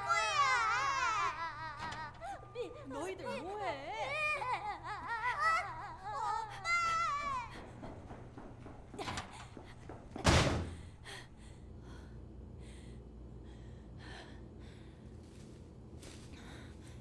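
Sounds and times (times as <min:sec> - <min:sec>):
heavy thud: 0:07.5 - 0:11.0.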